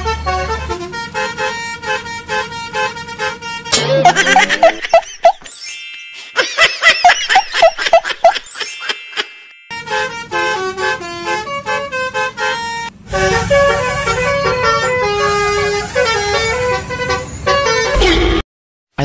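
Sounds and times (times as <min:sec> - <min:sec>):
bus horn playing a tune: 0:00.0 - 0:03.8, 0:09.7 - 0:18.4.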